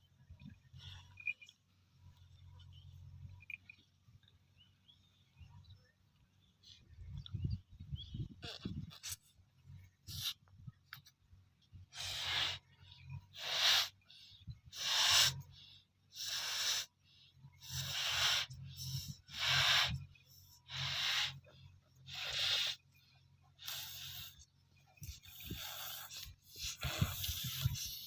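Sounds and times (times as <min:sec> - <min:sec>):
short hissing rushes of air: 0:12.0 - 0:12.6, 0:13.4 - 0:14.0, 0:14.7 - 0:15.4, 0:16.2 - 0:16.9, 0:17.6 - 0:20.0, 0:22.1 - 0:22.8, 0:23.6 - 0:28.0.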